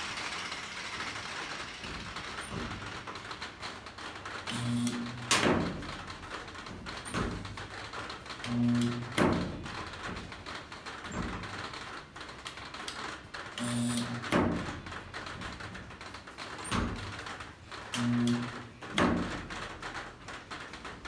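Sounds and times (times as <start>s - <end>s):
stud welder humming buzz: 0.0s - 6.0s, 8.4s - 9.2s, 13.6s - 14.3s, 18.0s - 18.8s.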